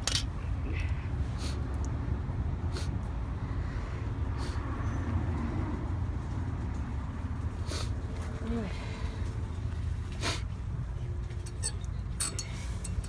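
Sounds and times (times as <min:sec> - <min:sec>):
low outdoor rumble: 0:00.0 - 0:13.0.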